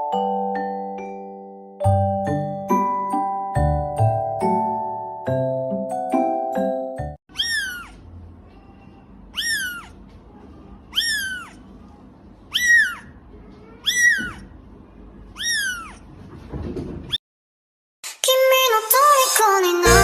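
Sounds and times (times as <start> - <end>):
cat meowing: 7.3 - 10.0, 10.9 - 11.6, 12.5 - 14.5, 15.3 - 16.1.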